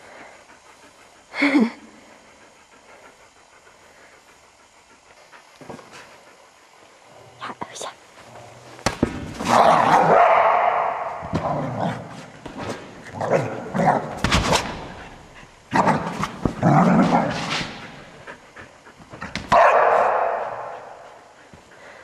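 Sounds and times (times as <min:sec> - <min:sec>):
dog barking in play: 0:09.5 - 0:12.1, 0:19.5 - 0:21.1.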